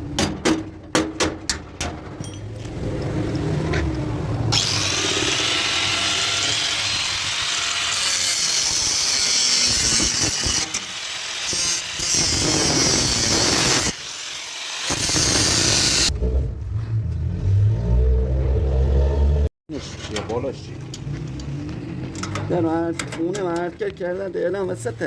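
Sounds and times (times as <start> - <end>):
power tool running: 4.5 - 16.1.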